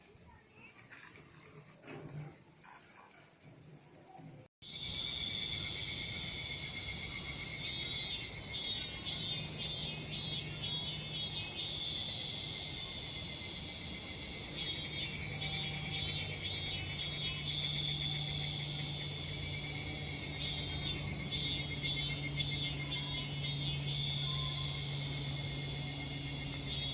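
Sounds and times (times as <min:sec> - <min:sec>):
cicadas droning: 0:04.6 - 0:26.9.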